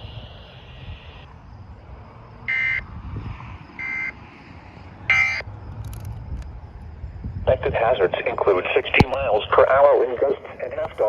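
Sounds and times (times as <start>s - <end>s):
buzzy data burst tones: 0.0s - 1.3s, 5.1s - 5.4s.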